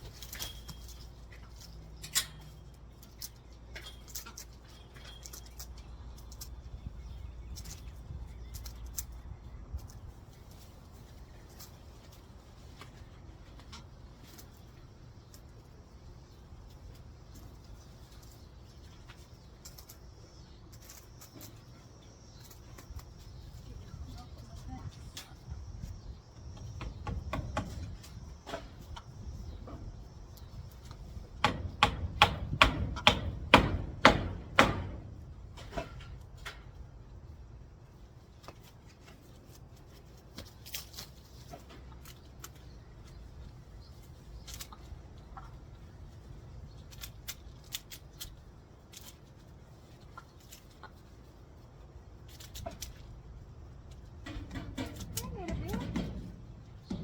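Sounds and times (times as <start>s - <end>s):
sharp knocks: 31.4s - 35.8s.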